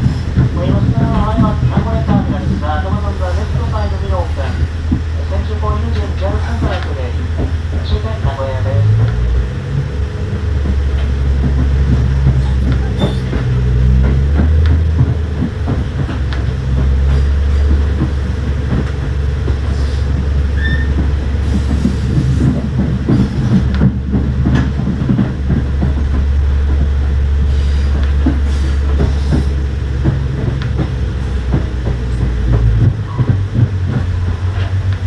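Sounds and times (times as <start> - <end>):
diesel train engine rumble: 0.0 - 35.0
wheels clicking over rail joints: 0.0 - 35.0
wheel squeals: 11.0 - 16.4, 19.6 - 23.9, 27.4 - 29.6, 33.0 - 34.8.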